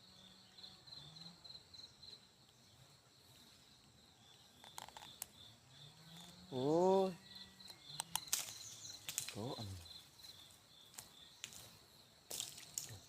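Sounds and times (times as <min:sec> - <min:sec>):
insects chirping: 0:00.0 - 0:13.0
sharp clicks: 0:07.6 - 0:09.4.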